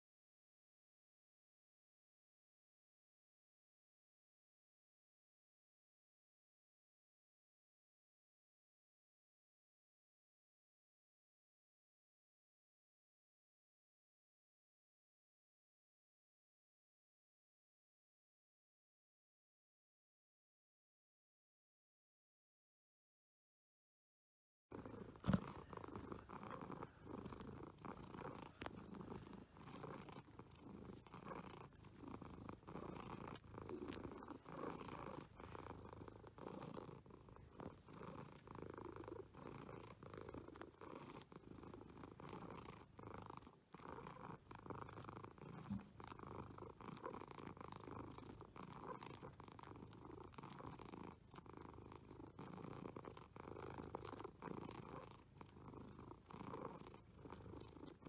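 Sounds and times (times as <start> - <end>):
cat snoring: 24.7 - 58.0.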